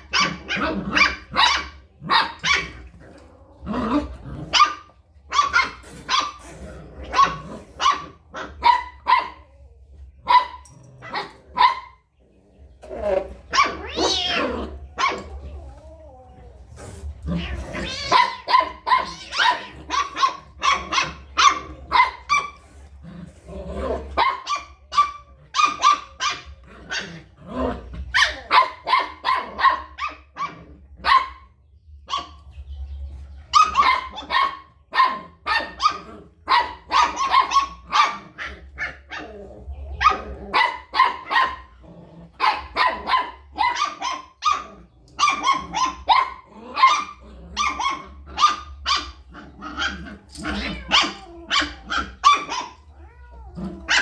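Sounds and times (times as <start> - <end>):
dog barking: 0.0 - 2.9, 4.5 - 6.4, 7.0 - 9.6, 10.2 - 12.0, 18.0 - 22.6, 24.2 - 27.2, 28.1 - 31.5, 32.1 - 32.6, 33.5 - 39.3, 40.0 - 41.8, 42.4 - 52.9, 53.8 - 54.0.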